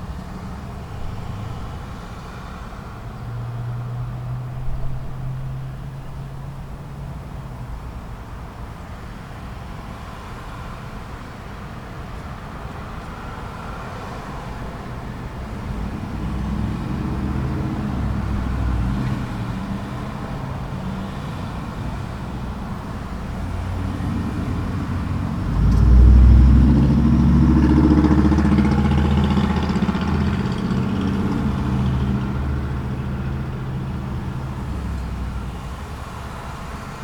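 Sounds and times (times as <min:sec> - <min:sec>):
vehicle engines passing: 0:00.0 - 0:08.5, 0:09.1 - 0:37.0
engine accelerating away: 0:15.6 - 0:21.4, 0:23.2 - 0:36.8.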